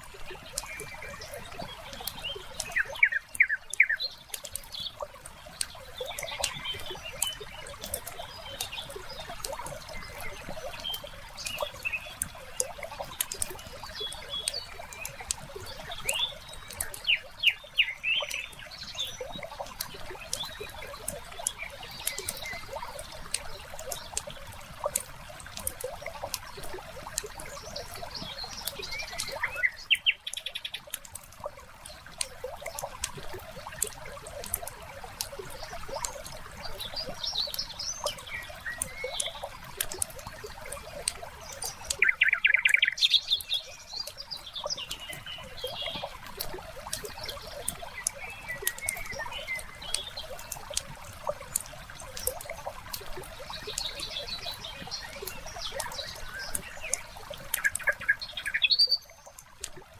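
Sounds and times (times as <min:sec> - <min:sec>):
small birds chirping: 0:00.0 - 0:59.9
wood fire crackling and popping: 0:37.1 - 0:42.1.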